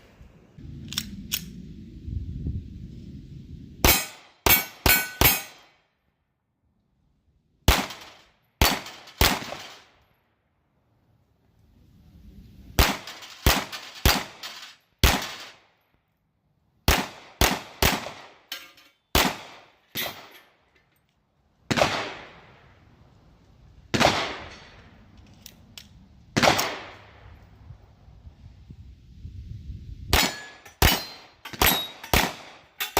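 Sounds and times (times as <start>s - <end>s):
pistol shots: 7.7s - 9.9s, 12.8s - 14.4s, 15.0s - 15.6s, 16.9s - 18.5s, 19.1s - 20.3s, 21.7s - 22.4s, 23.9s - 24.8s, 26.4s - 27.2s, 30.1s - 32.7s.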